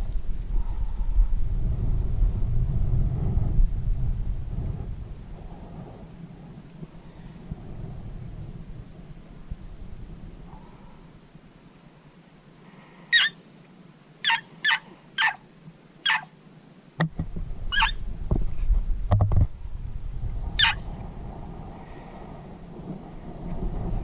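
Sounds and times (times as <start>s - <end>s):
low rumble: 0.0s - 11.5s, 17.2s - 24.0s
faint birdsong: 6.2s - 19.8s, 20.6s - 24.0s
dog barking in high yips: 13.1s - 13.6s, 14.2s - 15.4s, 16.0s - 16.3s, 17.7s - 18.0s, 20.6s - 21.0s.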